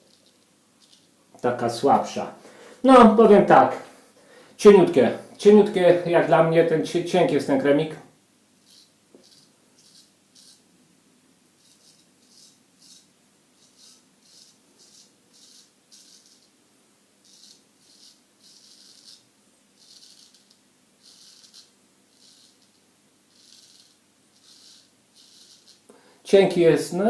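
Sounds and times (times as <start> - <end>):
razor scraping stubble: 8.6 - 10.7, 11.6 - 16.5, 17.2 - 25.9.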